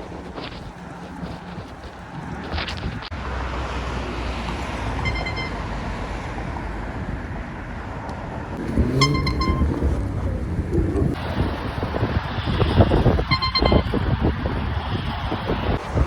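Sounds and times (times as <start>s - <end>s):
wind on microphone: 0.0s - 3.2s, 8.6s - 16.0s
street traffic: 0.0s - 16.0s
air horn toot: 5.0s - 5.7s, 8.6s - 11.2s, 12.7s - 14.4s.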